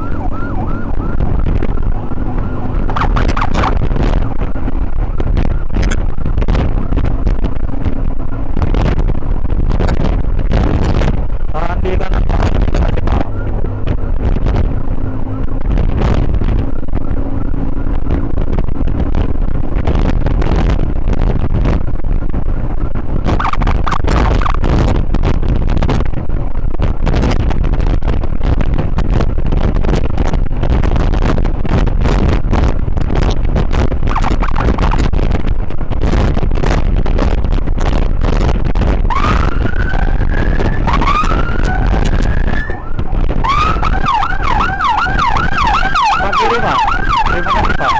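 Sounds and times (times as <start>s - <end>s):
ambulance siren: 0.0s - 5.8s, 12.6s - 15.6s, 34.1s - 35.0s, 39.1s - 47.9s
wind and motorcycle road rumble: 0.0s - 47.9s.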